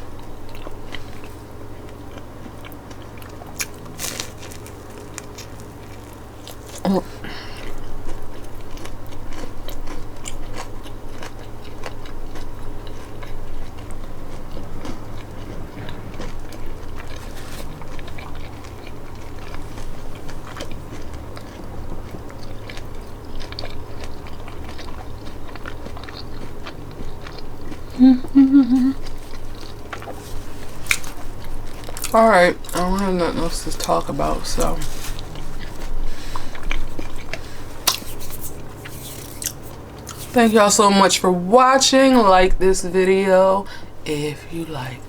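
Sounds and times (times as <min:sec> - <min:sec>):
person chewing crunchy food: 0:00.0 - 0:40.6
person humming: 0:28.0 - 0:29.0.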